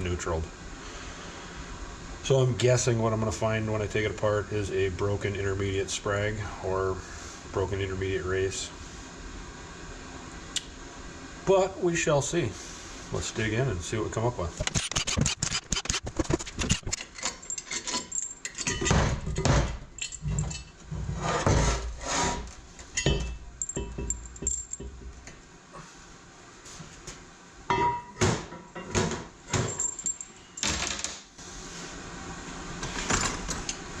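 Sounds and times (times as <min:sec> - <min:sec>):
metal parts and tools clinking: 0:14.6 - 0:19.0, 0:20.0 - 0:20.8, 0:23.0 - 0:24.9, 0:29.6 - 0:31.0.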